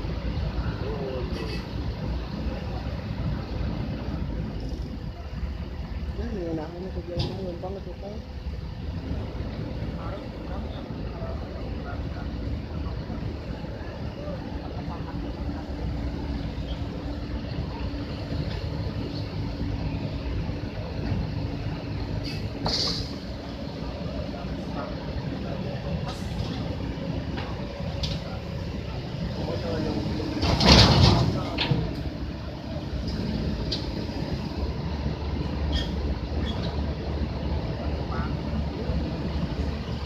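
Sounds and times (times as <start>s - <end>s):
diesel engine rumbling: 0.0s - 40.0s
short hiss: 22.2s - 23.2s
short high squeaks: 35.7s - 36.8s.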